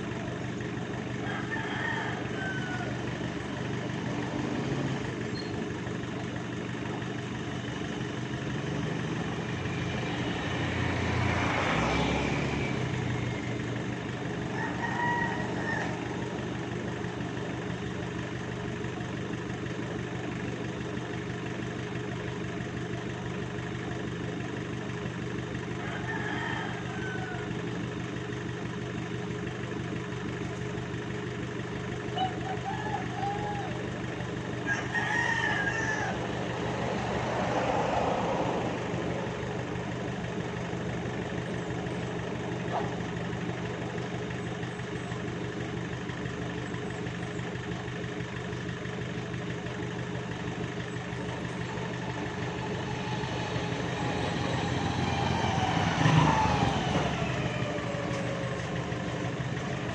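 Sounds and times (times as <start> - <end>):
engine idling: 0.0 - 59.9
rooster crowing: 1.1 - 5.2, 8.6 - 17.3, 25.7 - 27.8, 32.2 - 44.4, 50.3 - 59.9.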